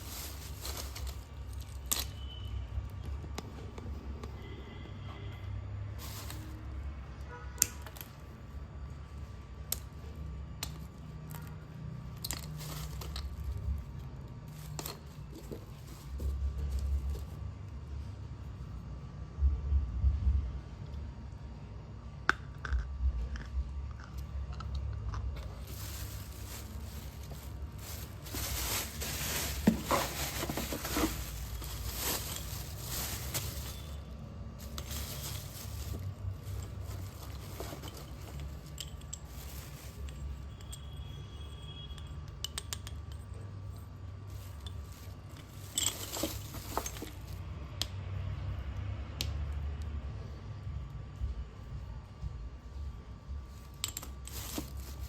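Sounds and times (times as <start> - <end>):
slate pencils being crunched: 0.0 - 2.4, 23.9 - 40.8, 44.4 - 47.4.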